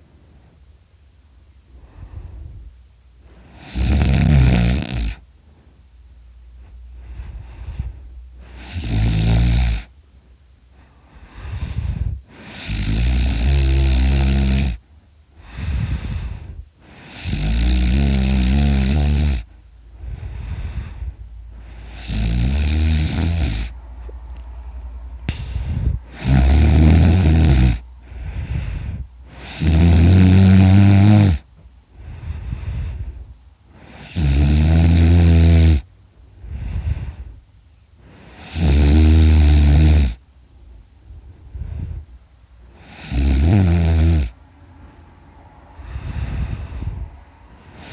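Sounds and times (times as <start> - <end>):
man snoring loudly: 3.5 - 5.2, 8.5 - 9.9, 11.4 - 14.8, 15.5 - 19.5, 21.8 - 23.8, 25.3 - 31.5, 33.8 - 35.9, 38.3 - 40.2, 42.8 - 44.4, 47.7 - 47.9.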